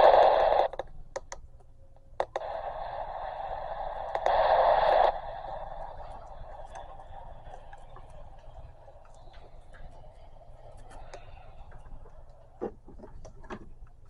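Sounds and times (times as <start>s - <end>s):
radio static hiss: 0.0s - 1.0s, 2.2s - 13.6s
sharp clicks: 0.0s - 1.4s, 2.2s - 2.8s, 4.0s - 10.0s.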